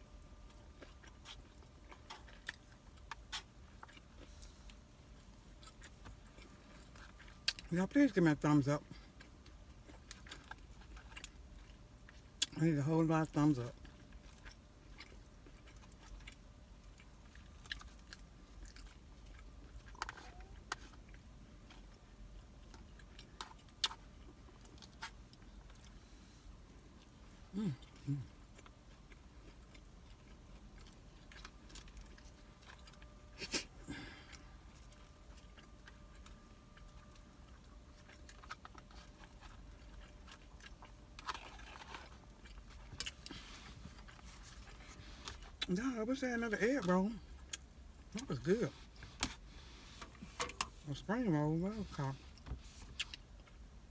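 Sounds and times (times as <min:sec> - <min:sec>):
faint low hum: 0:00.0 - 0:53.9
person chewing food: 0:00.1 - 0:45.8, 0:51.7 - 0:53.9
food crunches: 0:27.7 - 0:43.4.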